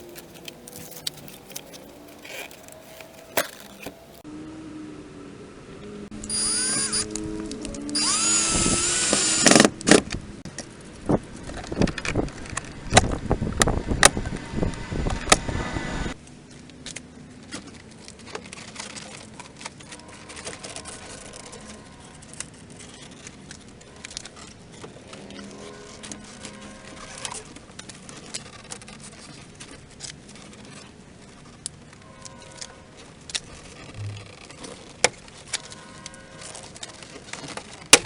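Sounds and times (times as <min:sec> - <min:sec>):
power tool whining: 0:06.2 - 0:10.0.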